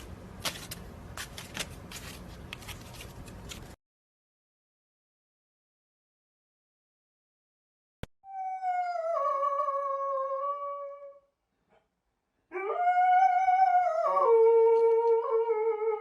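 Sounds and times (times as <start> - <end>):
dog howling: 8.3 - 11.2, 12.5 - 16.0.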